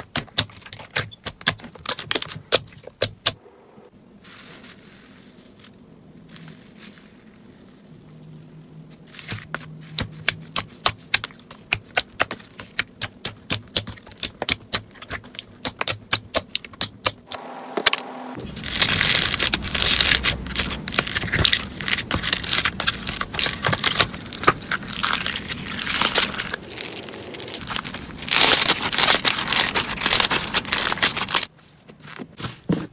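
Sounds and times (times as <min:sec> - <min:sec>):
slime crackling: 0:18.4 - 0:31.5.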